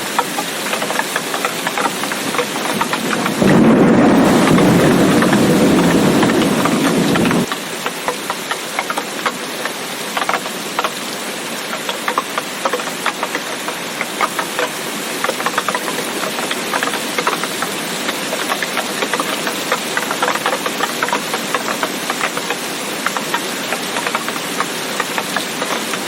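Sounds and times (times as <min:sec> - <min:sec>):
steady rain: 0:00.0 - 0:26.0
drips ticking: 0:00.2 - 0:11.1, 0:11.7 - 0:26.0
thunder rumble: 0:02.0 - 0:07.5.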